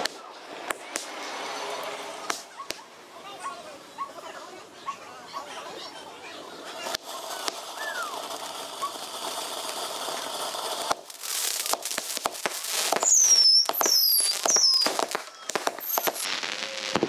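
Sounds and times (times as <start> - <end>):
fireworks fizzing hiss: 0.0 - 3.1, 6.7 - 17.0
fireworks crackling and popping: 0.0 - 3.8, 6.3 - 17.0
falling whistles: 7.3 - 9.0, 13.0 - 17.0.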